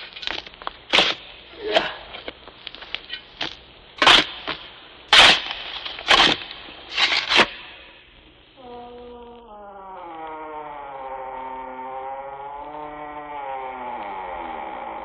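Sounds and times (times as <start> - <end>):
crackling noise: 0.0 - 15.0
droning tone: 8.5 - 15.0.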